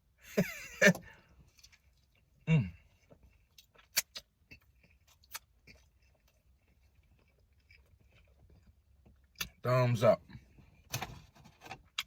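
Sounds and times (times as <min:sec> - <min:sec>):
chewing sandwich: 0:01.4 - 0:09.6.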